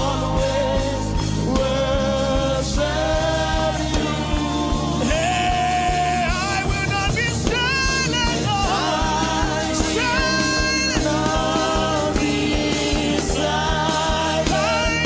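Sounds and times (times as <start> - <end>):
regular drum beat: 0.0 - 15.0
steady low bass: 0.0 - 15.0.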